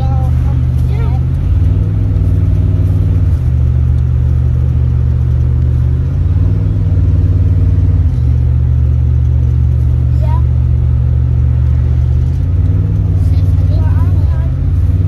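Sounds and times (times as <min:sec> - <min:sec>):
truck engine and road noise: 0:00.0 - 0:15.0.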